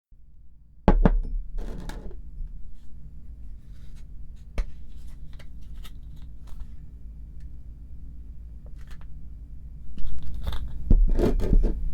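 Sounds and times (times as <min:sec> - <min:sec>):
sharp knocks on a tabletop: 0:00.9 - 0:01.4.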